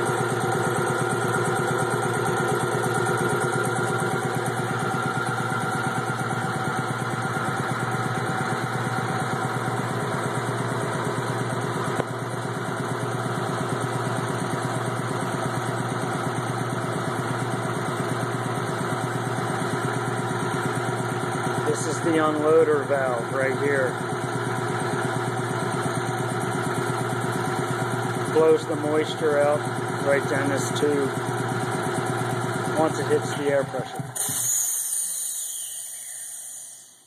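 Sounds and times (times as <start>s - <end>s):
air compressor pulsing: 0.0s - 37.0s.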